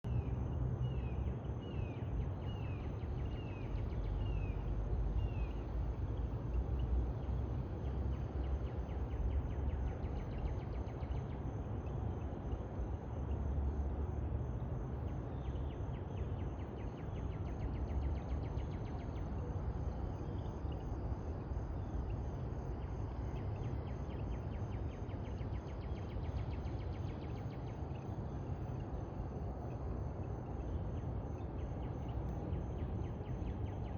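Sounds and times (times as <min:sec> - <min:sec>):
high pulsing insect trill: 0:16.4 - 0:33.9.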